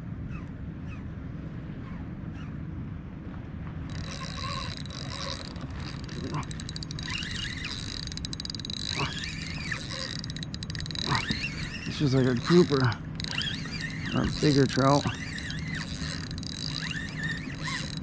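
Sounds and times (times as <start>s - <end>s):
fishing reel buzzing and ticking: 3.9s - 18.0s.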